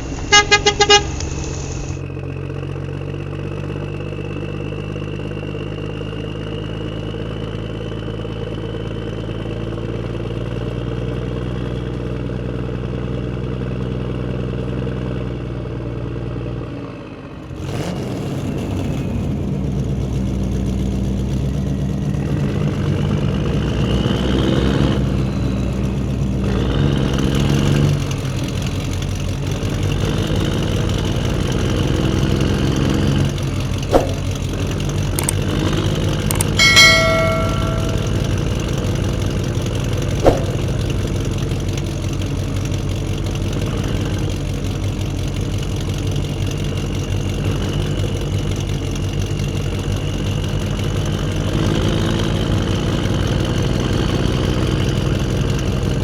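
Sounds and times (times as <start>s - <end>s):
truck engine running: 0.0s - 56.0s
engine revving: 17.4s - 36.7s, 50.3s - 56.0s.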